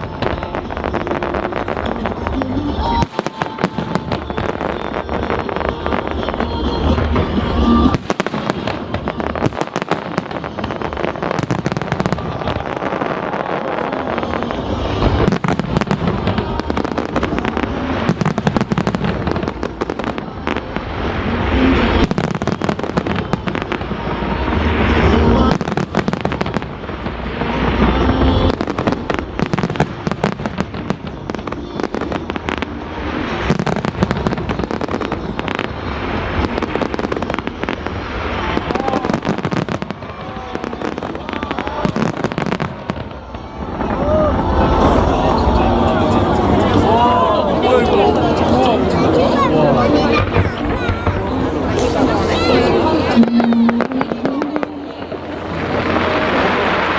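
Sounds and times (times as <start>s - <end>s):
fireworks bangs and crackling: 0.0s - 56.9s.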